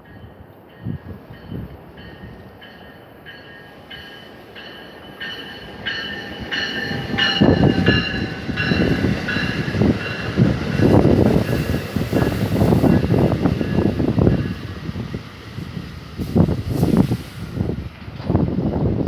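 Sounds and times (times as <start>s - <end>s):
train bell ringing: 0.0s - 15.0s
gusts of wind: 0.0s - 19.0s
low rumble of train: 0.0s - 19.0s.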